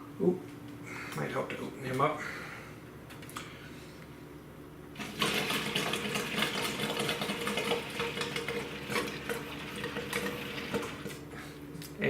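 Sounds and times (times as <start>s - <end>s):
water pump humming: 4.8s - 11.7s
coolant gurgling and crackling: 5.0s - 11.3s.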